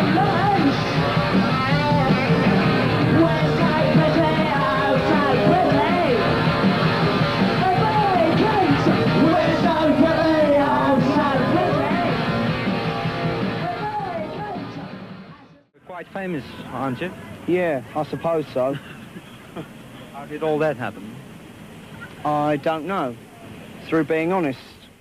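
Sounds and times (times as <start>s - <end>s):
punk rock song: 0.0s - 15.5s.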